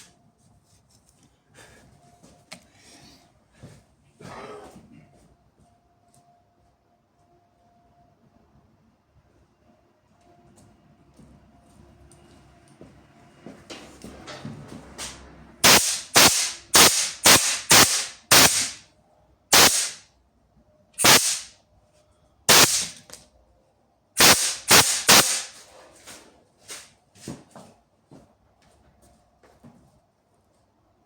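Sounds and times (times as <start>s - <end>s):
short sharp noise bursts: 15.6s - 18.8s, 19.5s - 20.0s, 21.0s - 21.5s, 22.5s - 23.1s, 24.2s - 25.6s.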